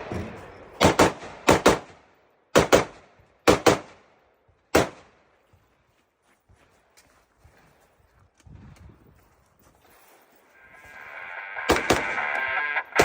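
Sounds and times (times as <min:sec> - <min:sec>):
rifle shots with echo: 0:00.0 - 0:04.1, 0:04.7 - 0:05.2, 0:11.7 - 0:12.2.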